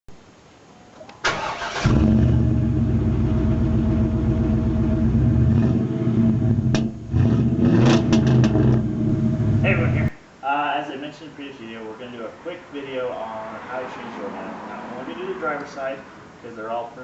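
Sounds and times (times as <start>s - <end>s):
truck engine cranking and running: 1.2s - 5.6s.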